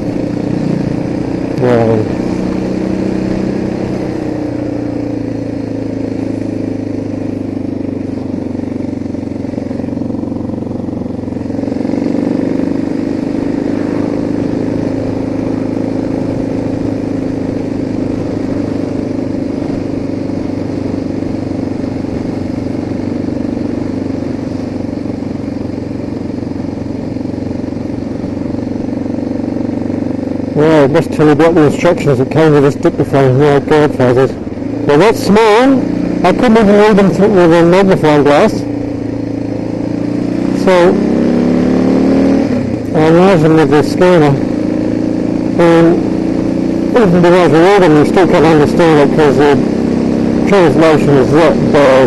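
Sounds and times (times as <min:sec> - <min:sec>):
motorcycle engine running: 0:00.0 - 0:52.0.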